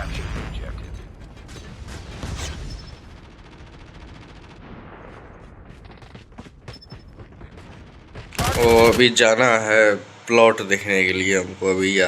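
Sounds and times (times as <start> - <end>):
video game automatic gunfire: 2.9 - 9.2.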